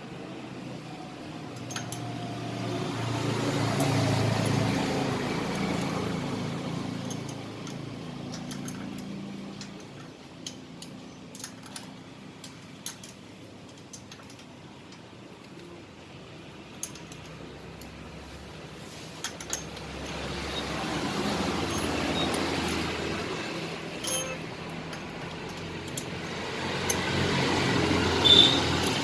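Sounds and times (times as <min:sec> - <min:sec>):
motor vehicle passing by: 0:01.9 - 0:09.7, 0:19.7 - 0:24.0, 0:24.7 - 0:29.0.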